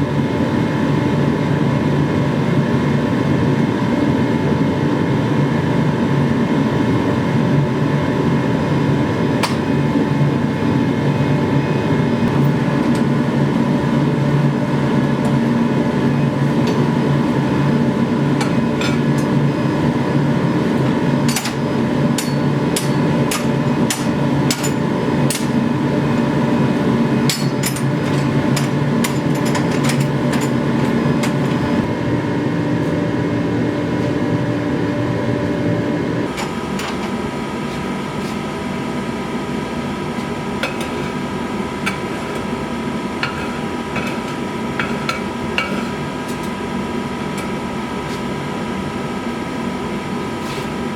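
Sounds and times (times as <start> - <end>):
loud droning hum: 0.0 - 50.9
hammer striking knife blade: 22.2 - 25.6.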